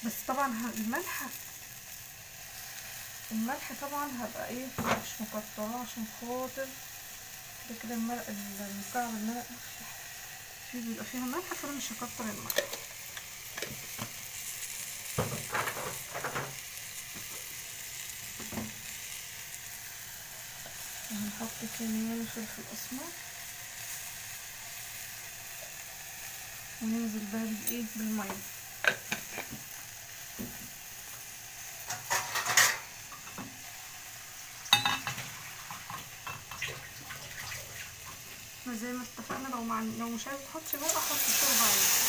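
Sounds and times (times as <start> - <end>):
sauce sizzling in a pot: 0.0 - 42.0
spoon scraping a pot: 32.0 - 33.4.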